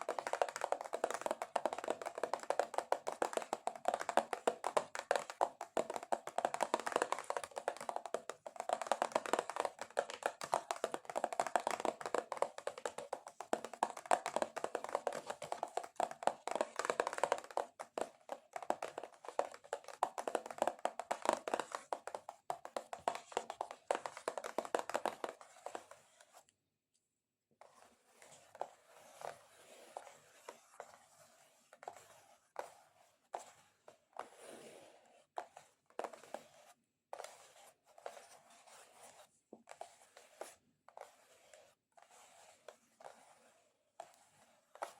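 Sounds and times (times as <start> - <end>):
fingernails tapping on cardboard: 0.0 - 26.0.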